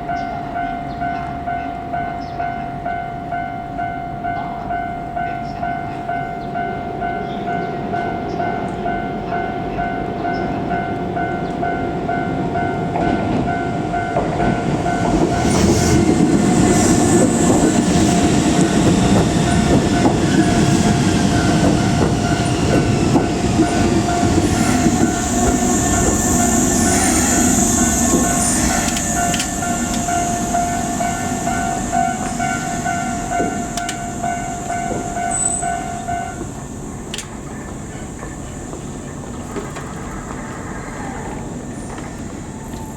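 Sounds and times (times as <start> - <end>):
train wheel and running noise: 0.0 - 42.9
level crossing bell dinging: 18.3 - 36.4.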